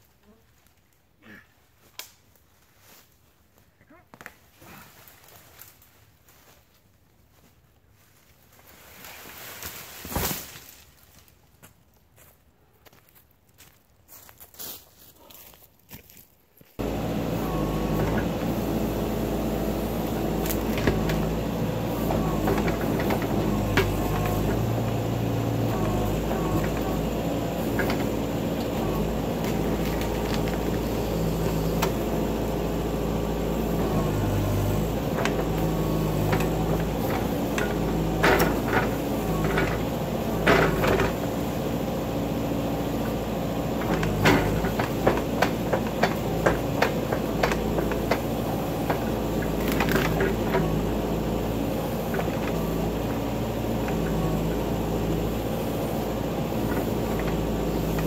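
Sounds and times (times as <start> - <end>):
knocks and clunks from digging: 16.8 - 55.2, 55.8 - 58.0
backhoe diesel engine running: 16.8 - 58.0.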